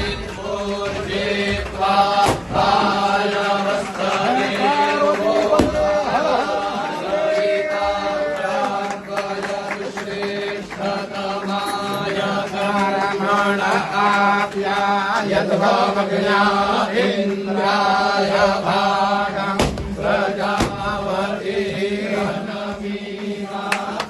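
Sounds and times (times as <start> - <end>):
men chanting on held tones: 0.0 - 24.0
brief knocks: 0.9 - 2.8, 5.6 - 6.0, 19.6 - 21.8.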